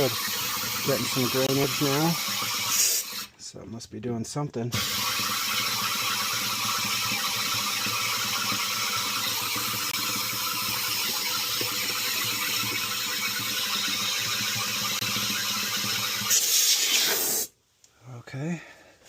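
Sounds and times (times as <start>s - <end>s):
compressed air blowing: 0.0s - 3.3s, 16.1s - 17.6s.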